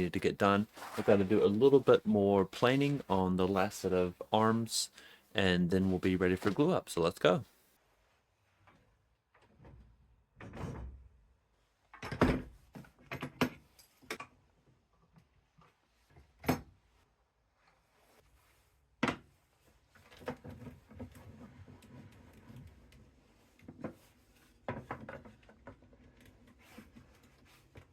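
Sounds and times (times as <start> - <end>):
soft rustling: 0.4 - 5.0.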